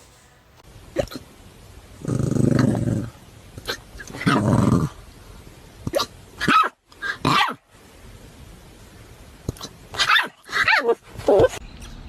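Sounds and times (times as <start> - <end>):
puppy growling: 2.0 - 5.0
puppy yelping: 5.9 - 7.6, 9.6 - 11.6.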